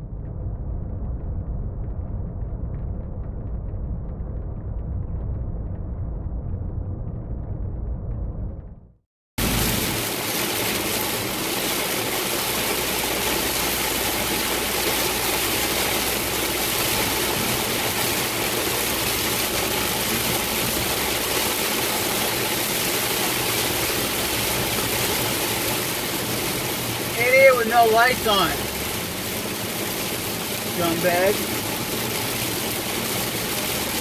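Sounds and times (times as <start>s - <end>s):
heavy rain on car: 9.4s - 34.0s
tyre spray and road noise: 9.4s - 34.0s.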